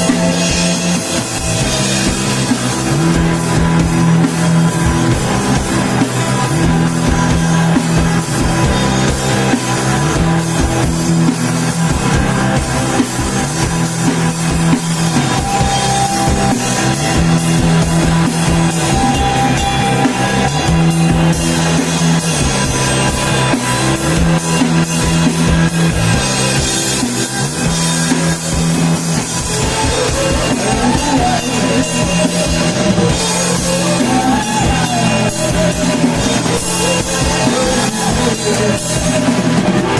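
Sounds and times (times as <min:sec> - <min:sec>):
bass guitar low notes: 0:00.0 - 0:39.9
drum kit: 0:00.0 - 0:39.9
electric guitar: 0:00.0 - 0:39.9.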